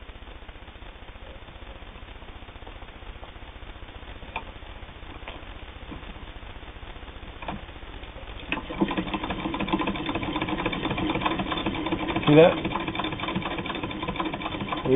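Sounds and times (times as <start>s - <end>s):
sewing machine clatter: 8.5s - 14.9s.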